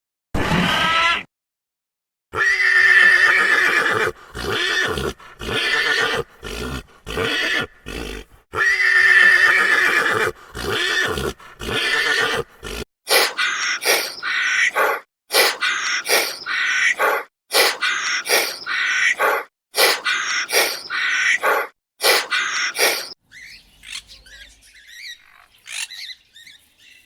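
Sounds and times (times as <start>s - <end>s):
harsh animal calls: 2.3s - 23.2s
horse whinnying: 2.4s - 23.2s.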